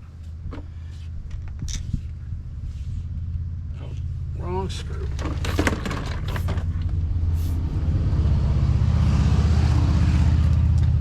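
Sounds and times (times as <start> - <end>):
vehicle engine idling: 0.0 - 8.0.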